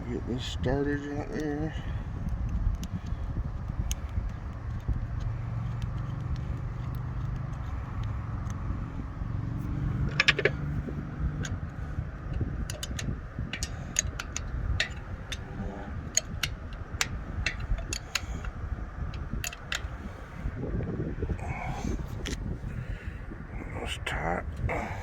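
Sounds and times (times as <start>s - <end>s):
low machinery hum: 0.0s - 25.0s
hand tools clicking on metal: 10.0s - 11.6s, 12.2s - 20.0s.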